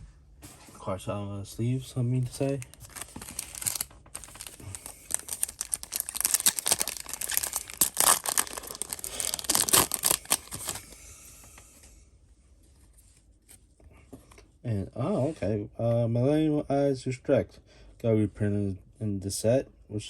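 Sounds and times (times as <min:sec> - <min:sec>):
foil wrapper tearing and crinkling: 0:02.4 - 0:11.0.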